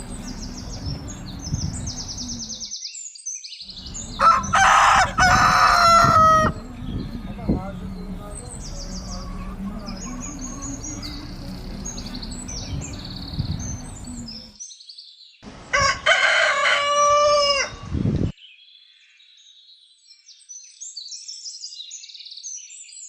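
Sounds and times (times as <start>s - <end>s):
small birds chirping: 0.0s - 15.4s
low background noise: 3.7s - 14.6s
rooster crowing: 3.8s - 6.9s, 15.7s - 17.9s.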